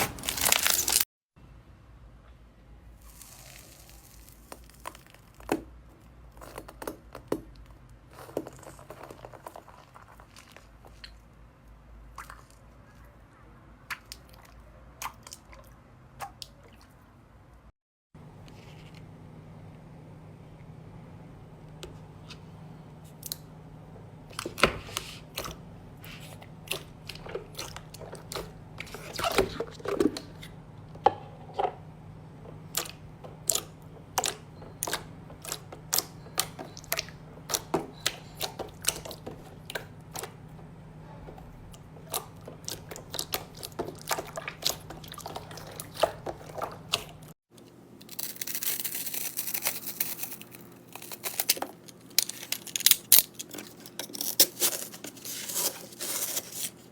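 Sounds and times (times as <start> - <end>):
crinkling crunch: 0.0 - 1.1, 3.1 - 5.7, 42.0 - 56.9.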